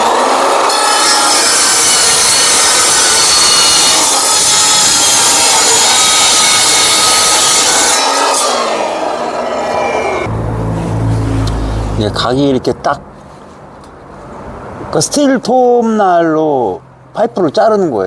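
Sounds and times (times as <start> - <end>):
saw cutting steel pipe: 0.0 - 10.3.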